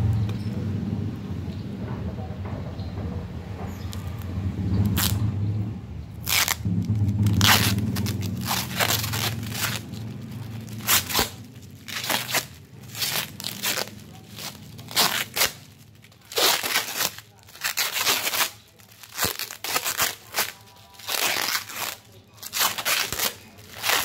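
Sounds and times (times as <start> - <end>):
packing tape ripping: 3.9 - 5.2, 6.2 - 24.0.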